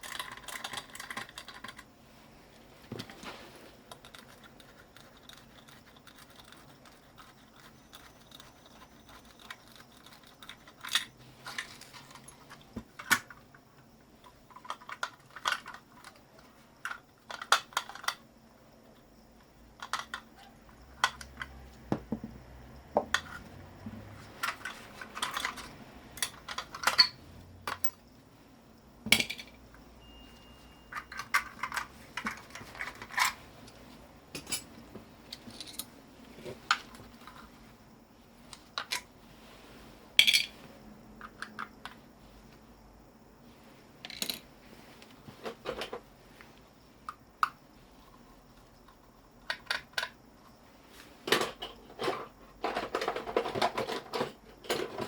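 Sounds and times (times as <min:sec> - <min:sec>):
metal parts and tools clinking: 0:24.4 - 0:28.0, 0:30.9 - 0:33.4, 0:35.3 - 0:35.9, 0:40.2 - 0:40.6.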